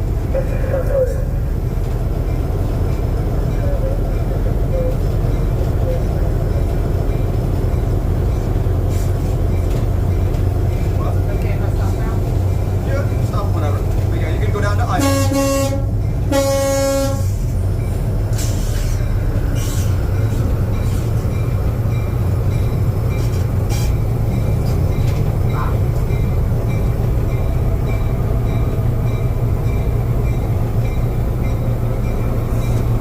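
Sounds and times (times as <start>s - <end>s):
diesel engine rumbling: 0.0s - 33.0s
locomotive horn blast: 15.0s - 17.5s.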